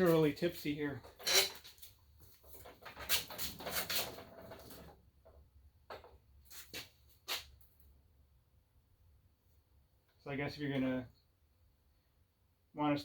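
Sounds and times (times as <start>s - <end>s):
metal saw stand rattling: 1.1s - 1.9s.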